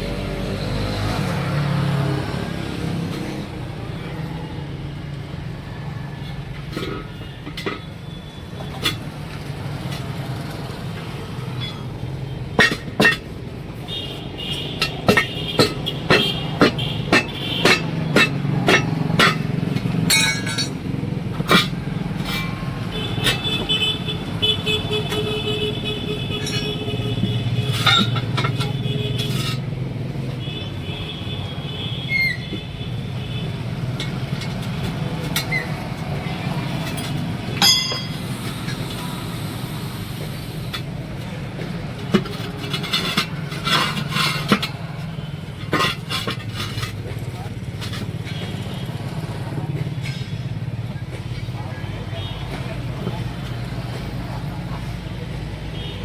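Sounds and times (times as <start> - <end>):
engine and traffic rumble: 0.0 - 56.0
high metallic ringing tones: 20.1 - 20.8, 37.6 - 38.8.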